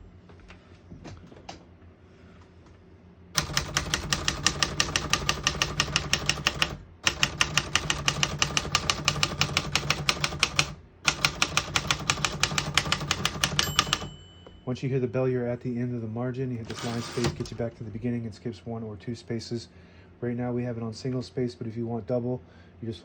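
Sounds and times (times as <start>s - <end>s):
manual typewriter typing: 3.4s - 14.2s, 16.6s - 17.8s.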